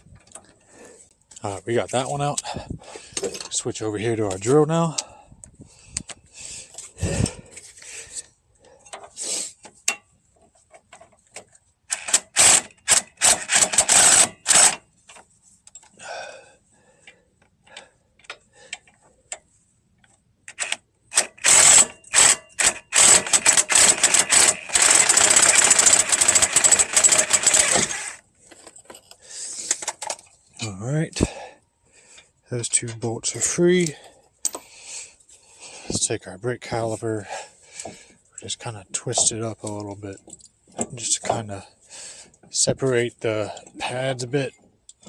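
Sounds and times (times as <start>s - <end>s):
drill spinning out bolts: 11.9s - 14.9s, 20.5s - 28.2s.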